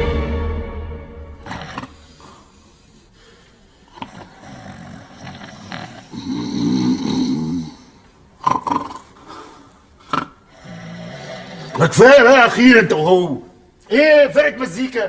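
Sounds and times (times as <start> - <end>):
faint breathing: 1.4 - 6.3, 9.0 - 11.8
men snoring: 1.4 - 11.8.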